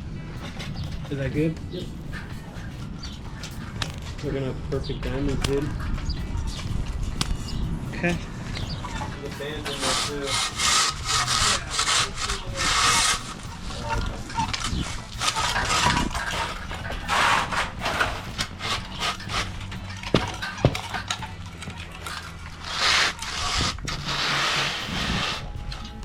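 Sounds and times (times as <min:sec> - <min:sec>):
steady low hum: 0:00.0 - 0:26.0
concrete groover scraping wet concrete: 0:07.9 - 0:26.0.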